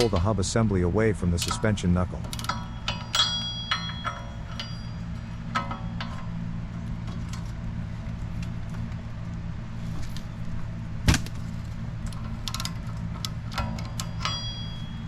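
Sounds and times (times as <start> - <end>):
steady low hum: 0.0 - 15.0
hand tools clinking on metal: 1.3 - 6.4, 12.1 - 15.0.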